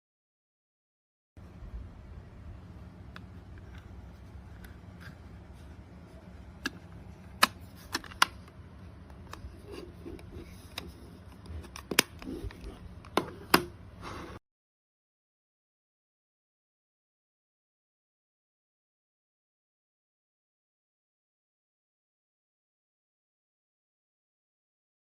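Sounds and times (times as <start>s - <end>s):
low steady hum: 1.4s - 14.4s.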